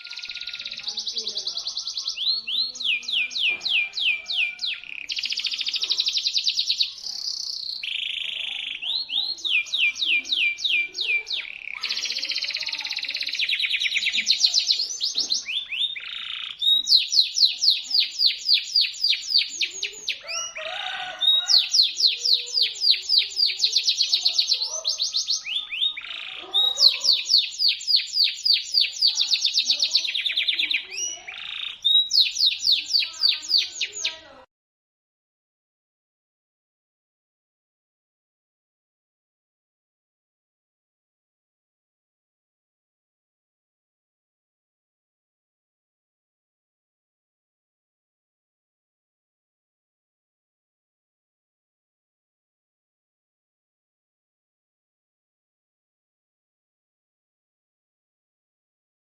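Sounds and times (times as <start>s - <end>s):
canary singing trills: 0.0s - 34.5s.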